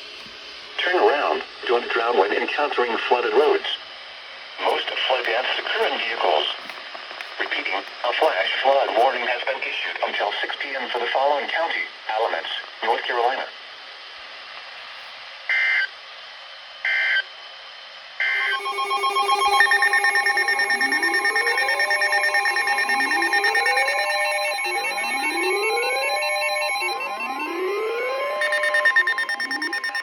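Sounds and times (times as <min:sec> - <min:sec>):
electronic tone sequence: 0:18.2 - 0:30.0
warbling two-tone data bursts: 0:18.3 - 0:30.0.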